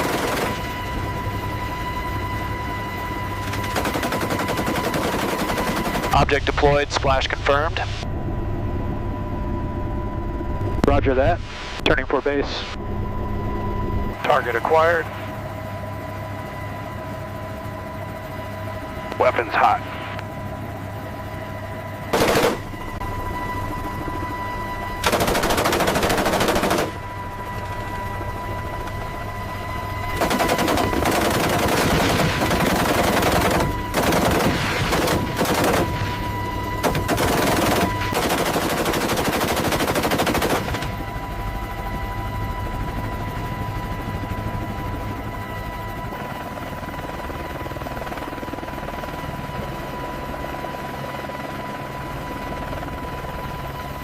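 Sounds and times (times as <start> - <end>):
machine gun firing bursts: 0.0 - 0.6, 3.6 - 6.2, 22.1 - 22.7, 25.0 - 27.0, 30.2 - 36.2, 36.8 - 40.9.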